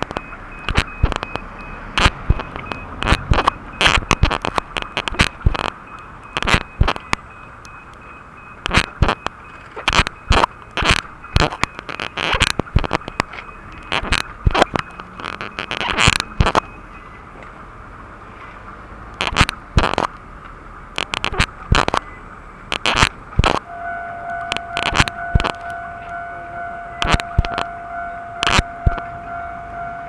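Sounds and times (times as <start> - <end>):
sharp clicks and crackles: 0.0 - 17.6, 19.1 - 30.0
steady rush of noise: 0.0 - 30.0
level crossing bell ringing: 23.6 - 30.0.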